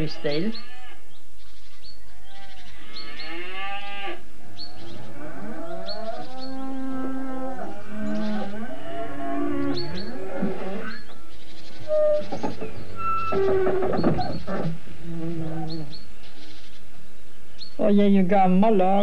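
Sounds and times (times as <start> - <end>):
cows lowing: 2.2 - 16.1.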